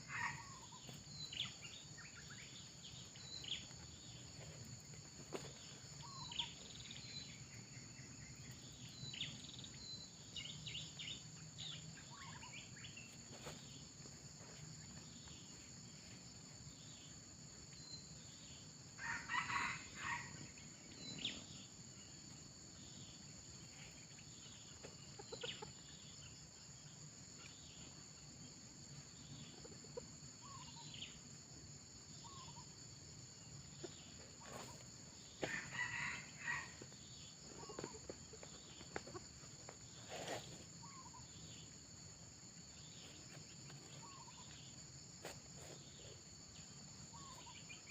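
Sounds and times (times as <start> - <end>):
high insect drone: 0.0 - 47.9
small bird chirps: 6.0 - 7.3, 40.2 - 41.4, 44.0 - 44.6
rooster crowing: 19.0 - 20.4, 35.4 - 36.8.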